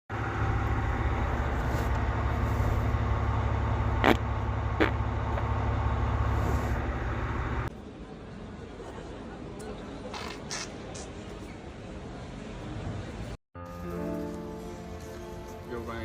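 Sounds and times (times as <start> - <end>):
vehicle engine rumble: 0.1 - 11.4.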